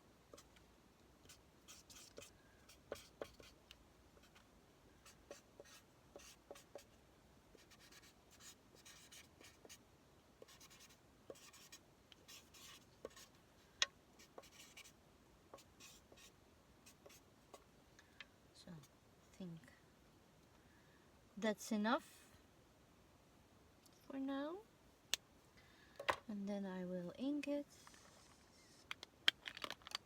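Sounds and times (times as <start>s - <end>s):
marker scratching on paper: 1.2s - 3.6s, 5.0s - 6.9s, 7.6s - 9.8s, 10.4s - 13.3s, 14.2s - 14.9s, 15.6s - 17.2s.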